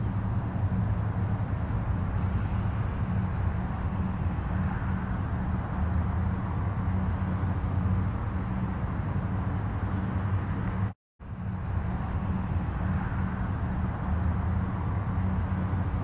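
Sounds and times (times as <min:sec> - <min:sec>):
distant highway traffic: 0:00.0 - 0:16.0.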